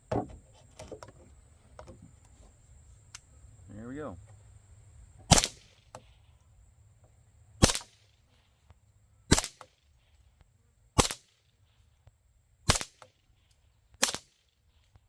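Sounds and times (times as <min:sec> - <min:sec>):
suppressed gunshots: 0:05.3 - 0:06.0, 0:07.6 - 0:08.0, 0:09.3 - 0:09.8, 0:11.0 - 0:11.4, 0:12.7 - 0:13.2, 0:14.0 - 0:14.4.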